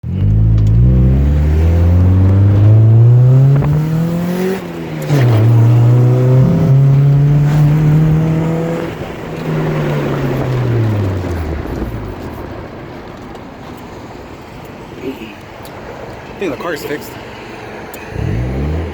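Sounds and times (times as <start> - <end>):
car engine revving: 0.0 - 13.2, 18.0 - 18.9.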